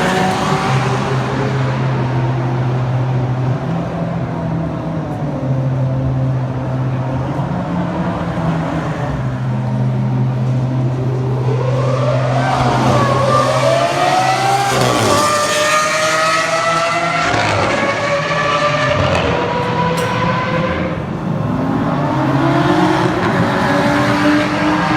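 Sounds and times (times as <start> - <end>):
car engine accelerating through gears: 8.0 - 24.9.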